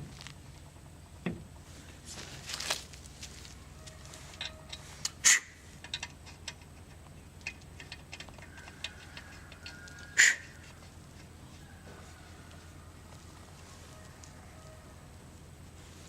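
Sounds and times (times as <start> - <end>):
metal tools clicking: 4.4 - 11.3.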